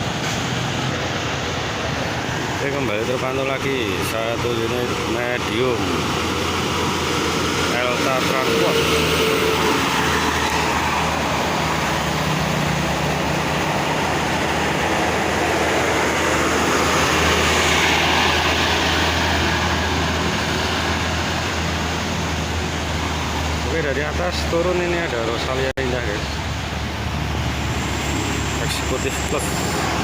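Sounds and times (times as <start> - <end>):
bus diesel engine passing: 0.0 - 30.0
road traffic noise: 0.0 - 30.0.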